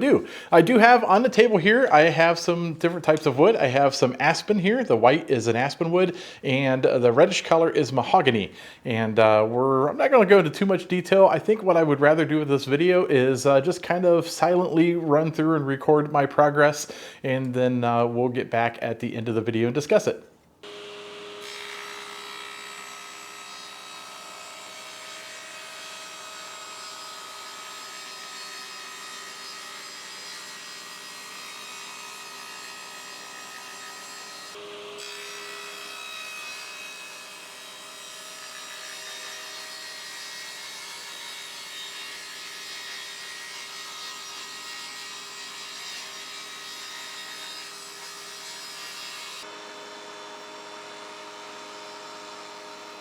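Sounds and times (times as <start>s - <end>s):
power woodworking machine cutting wood: 20.6s - 53.0s.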